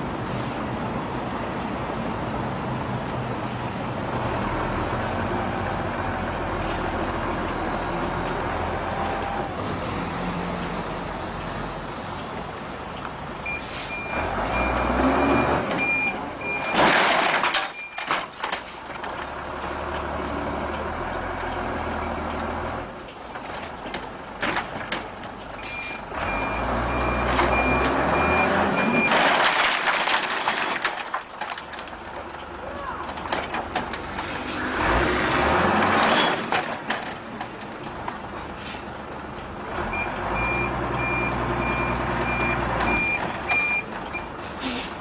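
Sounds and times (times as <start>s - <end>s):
reverse alarm beeping: 13.5s - 16.8s, 25.6s - 29.2s, 40.0s - 44.3s
air brake hiss: 44.6s - 45.0s.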